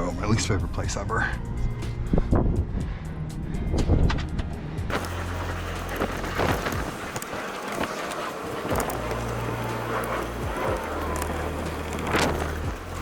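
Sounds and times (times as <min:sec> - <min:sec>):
rustling and scraping on ground: 0:04.9 - 0:13.0.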